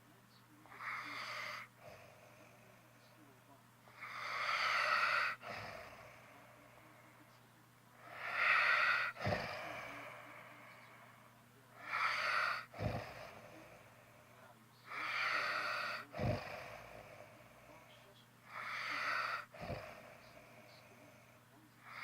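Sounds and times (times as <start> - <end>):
snoring with low snort: 8.2 - 10.1, 12.2 - 13.6, 15.2 - 17.3, 18.8 - 20.4.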